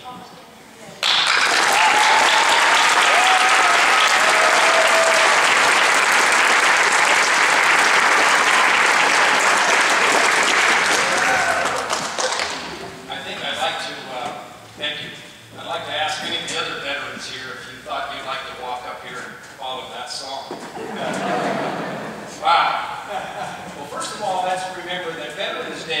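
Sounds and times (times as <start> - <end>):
audience applauding: 1.0 - 12.8.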